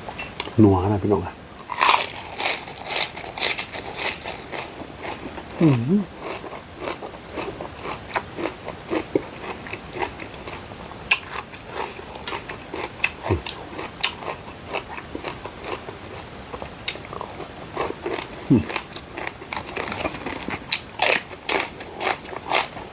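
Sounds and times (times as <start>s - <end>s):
person chewing crunchy food: 1.6s - 22.9s.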